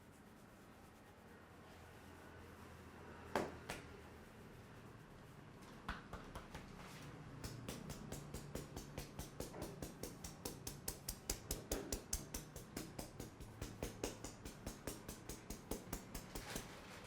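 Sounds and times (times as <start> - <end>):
hand strikes on head: 7.4 - 16.5
sharp snaps: 7.4 - 16.6.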